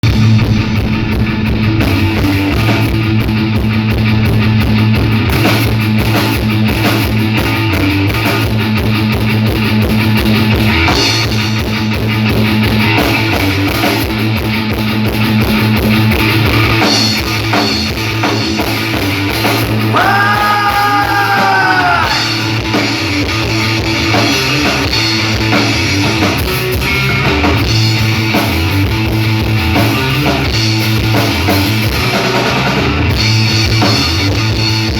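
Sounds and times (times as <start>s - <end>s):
guitar note bending: 0.0s - 8.1s
rock band playing live: 0.0s - 34.9s.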